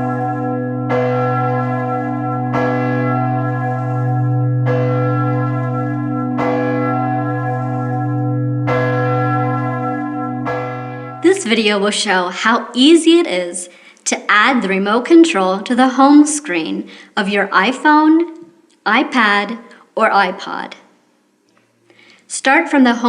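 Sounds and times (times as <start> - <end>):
church bell tolling: 0.0 - 12.6.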